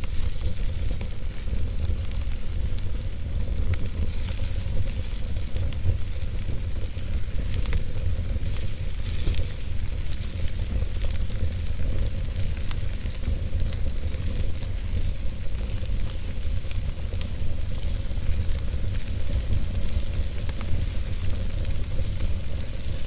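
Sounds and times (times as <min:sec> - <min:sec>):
constant low rumble: 0:00.0 - 0:23.0
steady hiss: 0:00.0 - 0:23.0
wood fire crackling: 0:00.0 - 0:23.0.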